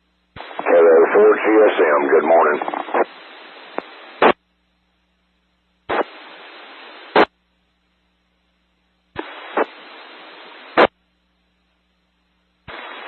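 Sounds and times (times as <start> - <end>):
radio transmission hiss: 0.3 - 4.4, 5.9 - 7.4, 9.2 - 11.0, 12.6 - 13.0
radio squelch burst: 0.4 - 4.4, 5.9 - 7.3, 9.2 - 10.9, 12.7 - 13.0.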